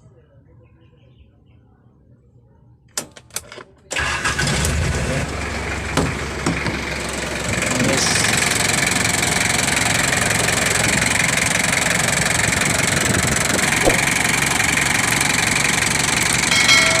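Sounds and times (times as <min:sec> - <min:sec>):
diesel engine idling: 0:04.0 - 0:17.0
brief high tone: 0:16.5 - 0:17.0.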